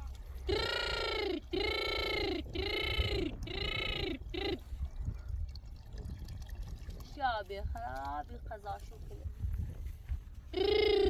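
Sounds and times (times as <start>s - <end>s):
animal crying: 0.5s - 4.6s.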